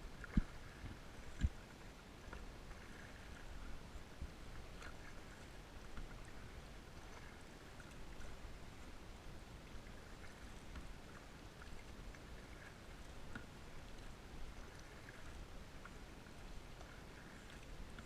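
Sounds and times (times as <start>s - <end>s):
water drips and small splashes: 0.0s - 18.0s
soft ticks: 13.3s - 14.1s.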